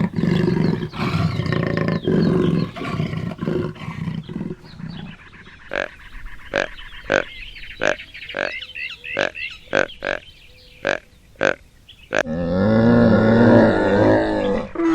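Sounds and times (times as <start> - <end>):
farm animal calling: 0.0 - 14.9
small birds chirping faintly: 0.0 - 14.9.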